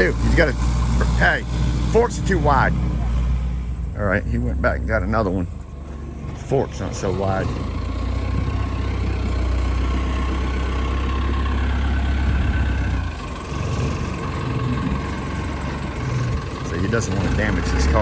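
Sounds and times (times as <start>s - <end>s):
forklift engine rumbling: 0.0s - 18.0s.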